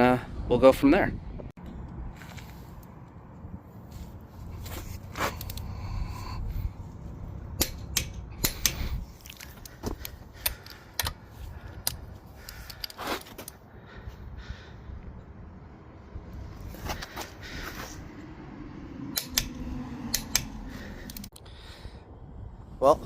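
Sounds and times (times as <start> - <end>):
metallic clicks of hand tools: 7.6 - 11.2, 19.1 - 21.4.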